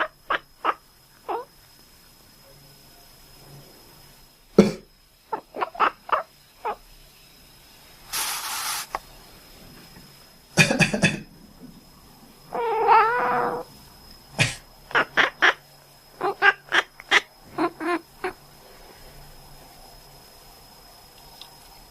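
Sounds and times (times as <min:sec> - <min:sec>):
person coughing: 0:04.6 - 0:04.8, 0:10.6 - 0:11.3, 0:14.4 - 0:14.6
cat chirping: 0:12.5 - 0:13.6, 0:16.2 - 0:18.4
wavering call: 0:12.5 - 0:13.7.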